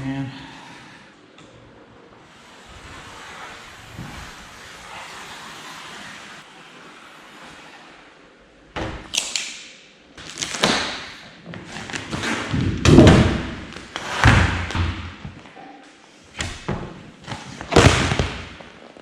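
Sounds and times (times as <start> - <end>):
thumps and knocks of panels: 12.1 - 15.4.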